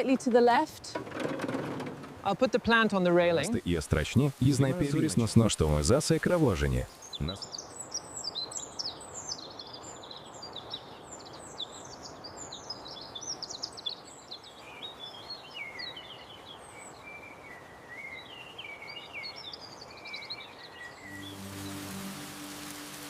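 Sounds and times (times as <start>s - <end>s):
steady outdoor hiss: 0.0s - 23.0s
rain-like hiss: 1.4s - 23.0s
small birds chirping: 3.3s - 23.0s
low musical drone: 21.0s - 23.0s.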